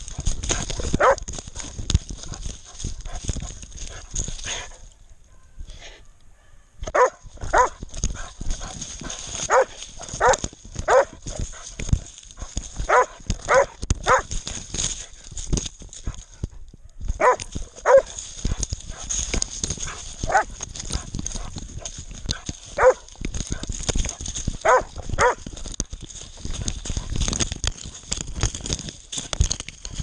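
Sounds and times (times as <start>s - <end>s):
rustling: 0.0s - 30.0s
dog barking: 1.0s - 1.3s, 6.9s - 7.8s, 9.4s - 11.2s, 12.9s - 14.3s, 17.2s - 18.2s, 19.9s - 20.5s, 22.8s - 23.1s, 24.6s - 25.4s.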